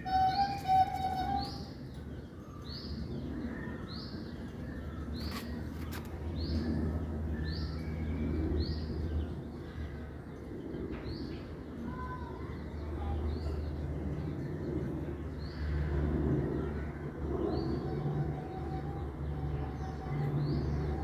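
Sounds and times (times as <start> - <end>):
bird chirping high: 0.0 - 2.1.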